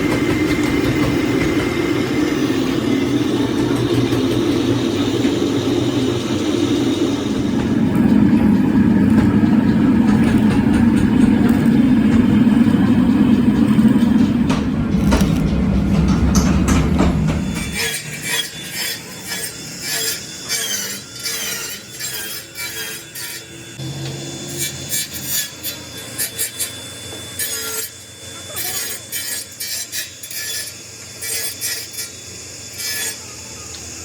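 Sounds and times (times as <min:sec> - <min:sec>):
heavy machinery rumbling: 0:00.0 - 0:18.6
thin wavering high whine: 0:00.0 - 0:21.9, 0:23.0 - 0:34.0.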